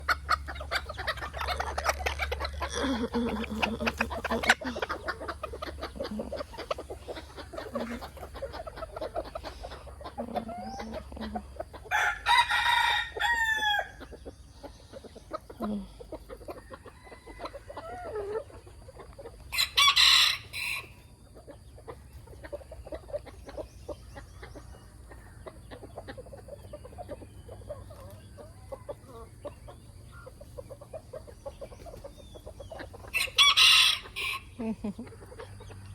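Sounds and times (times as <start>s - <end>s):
chickens clucking: 0.0s - 35.9s
rooster crowing loudly: 11.9s - 14.0s, 19.5s - 20.9s, 33.2s - 34.5s.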